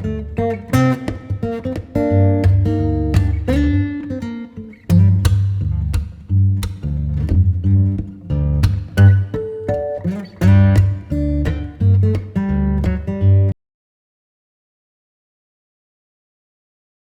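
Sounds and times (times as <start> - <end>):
acoustic guitar: 0.0 - 13.6
steady bass: 2.0 - 4.0, 4.9 - 9.4, 10.4 - 13.5.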